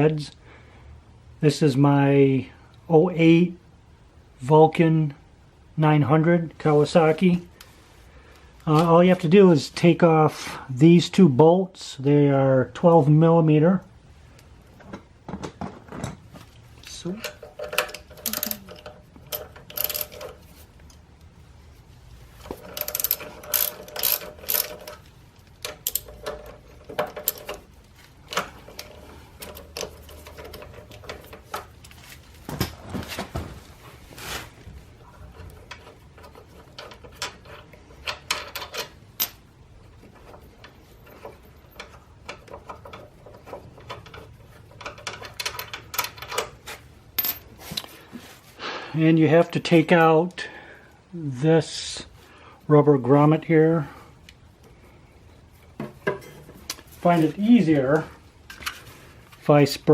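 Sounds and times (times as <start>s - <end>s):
ratchet wrench clicking: 17.7s - 20.3s, 22.6s - 25.0s, 25.6s - 26.5s.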